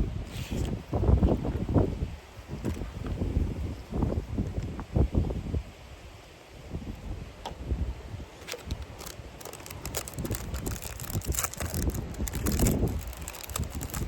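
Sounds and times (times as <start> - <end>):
wind buffeting microphone: 0.0 - 5.9, 6.6 - 14.0
small clicks and crackles: 8.4 - 14.0.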